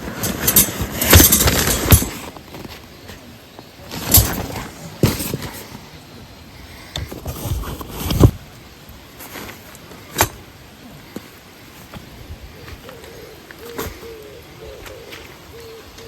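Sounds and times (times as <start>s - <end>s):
gear knocking and thumping: 0.0s - 2.4s.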